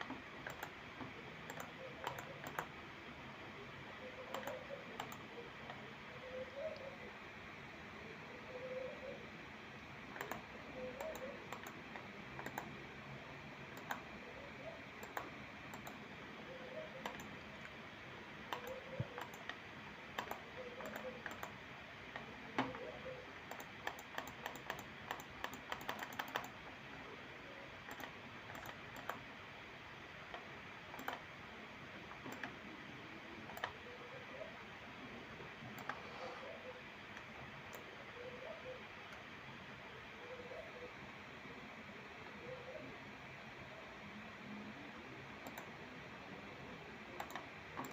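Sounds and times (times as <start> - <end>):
mouse clicks: 0.0 - 2.7, 4.2 - 5.8, 10.1 - 12.7, 13.7 - 14.1, 15.0 - 16.0, 16.7 - 17.8, 18.5 - 22.9, 23.5 - 26.6, 27.9 - 29.2, 30.3 - 31.2, 33.5 - 33.8, 35.7 - 36.0, 45.4 - 45.7, 47.2 - 47.9
keyboard typing: 0.0 - 2.8, 4.1 - 5.8, 10.1 - 12.8, 13.7 - 14.2, 14.8 - 16.1, 16.8 - 17.8, 18.4 - 26.7, 27.8 - 29.3, 30.3 - 31.3, 32.1 - 32.6, 33.4 - 33.9, 45.4 - 45.8, 47.2 - 47.9.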